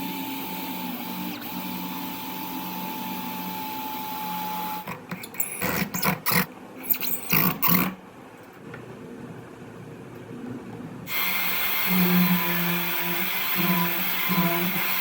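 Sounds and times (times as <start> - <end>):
electric drill running: 11.1 - 15.0.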